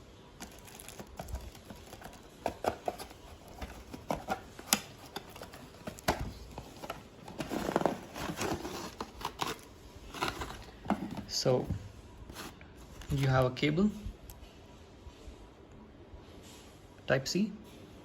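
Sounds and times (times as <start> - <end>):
packaging clicks and taps: 0.4 - 9.6
packaging rustling: 0.4 - 13.4.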